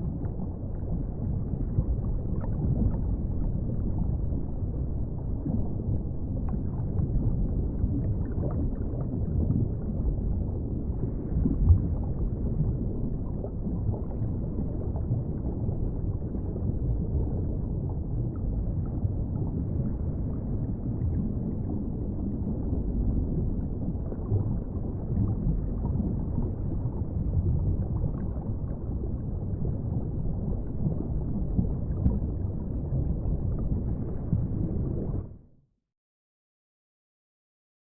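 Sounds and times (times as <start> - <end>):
muffled underwater rumble: 0.0 - 35.8.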